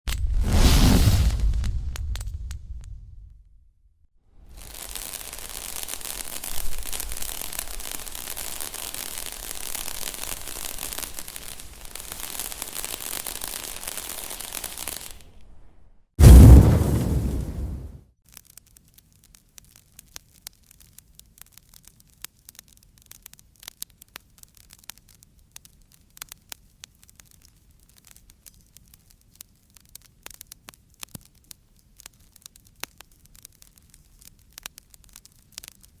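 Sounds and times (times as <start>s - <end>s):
fire crackling: 0.1s - 3.2s, 4.4s - 15.6s, 16.2s - 18.0s, 20.0s - 36.0s
loud burst with deep rumble: 16.2s - 18.0s.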